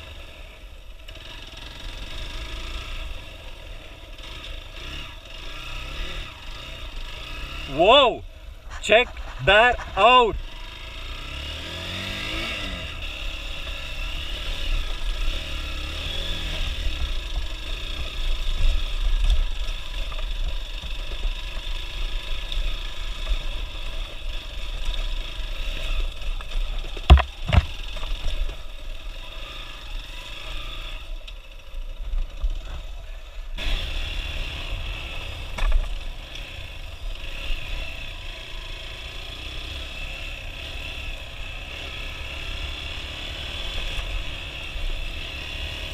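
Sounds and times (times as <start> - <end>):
motorcycle engine running: 0.0 - 45.9
sharp knocks: 27.0 - 27.8.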